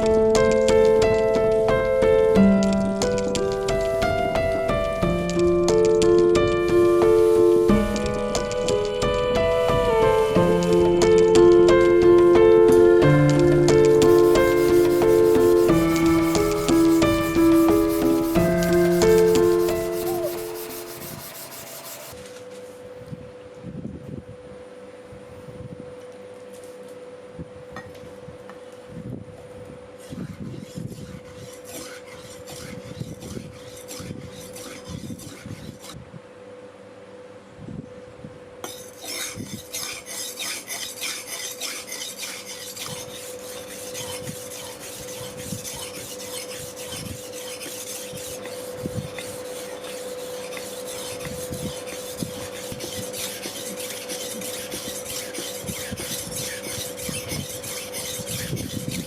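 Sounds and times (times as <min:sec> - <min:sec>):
steady hum: 0:00.0 - 0:22.2
hand file rasping: 0:05.3 - 0:22.2, 0:30.0 - 0:36.0, 0:38.6 - 0:59.0.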